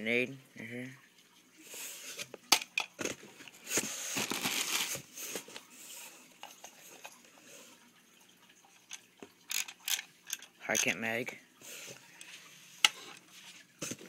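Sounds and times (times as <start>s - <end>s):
packaging crinkling: 3.7s - 5.6s.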